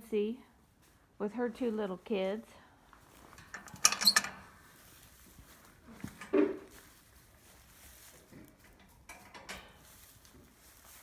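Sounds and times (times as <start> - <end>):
faint knocks and rustles: 3.0 - 11.0.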